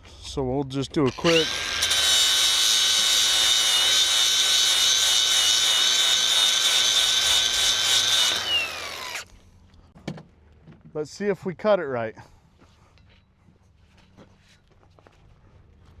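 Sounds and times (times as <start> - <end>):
angle grinder whining on steel: 1.1 - 9.3.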